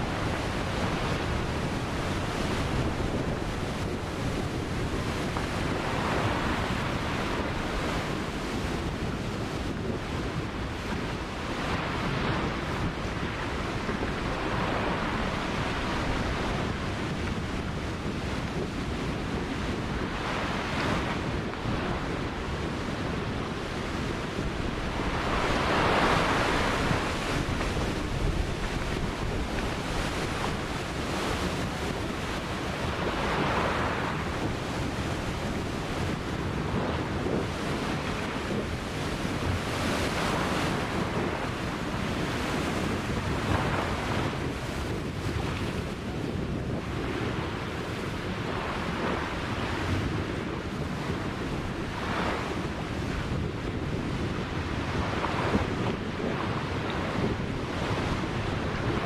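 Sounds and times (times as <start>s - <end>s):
ocean surf breaking: 0.0s - 9.0s, 9.8s - 59.0s
wind rumbling on microphone: 0.0s - 59.0s.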